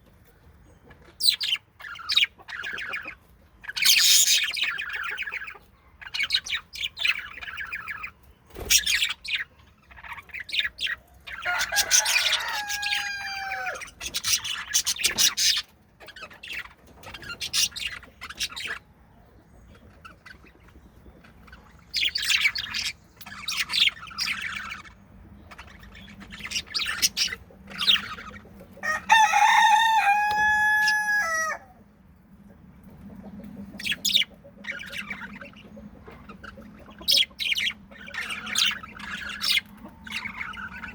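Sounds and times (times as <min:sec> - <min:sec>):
budgies chirping and chattering: 0:00.6 - 0:31.6, 0:32.3 - 0:40.9
budgie pitched calls: 0:33.7 - 0:40.9.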